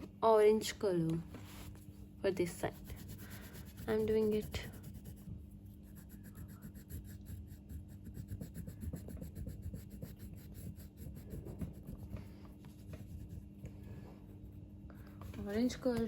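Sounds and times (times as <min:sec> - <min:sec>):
pencil rubbing on paper: 0:02.4 - 0:13.6.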